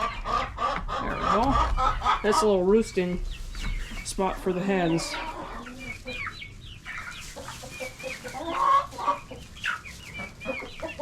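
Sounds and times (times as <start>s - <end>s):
chickens clucking: 0.0s - 11.0s.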